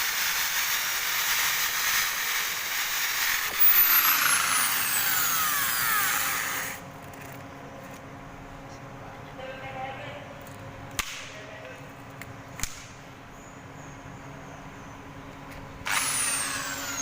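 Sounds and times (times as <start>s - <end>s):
drill whine falling in pitch: 3.4s - 6.7s.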